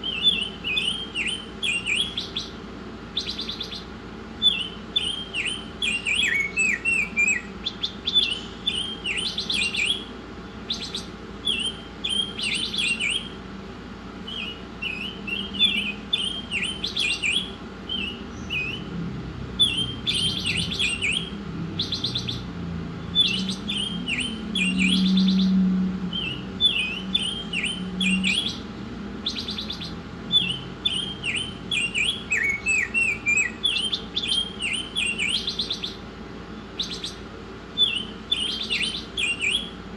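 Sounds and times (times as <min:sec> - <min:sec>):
songbird singing: 0:00.0 - 0:39.9
buzzy rattling bird notes: 0:14.2 - 0:39.9.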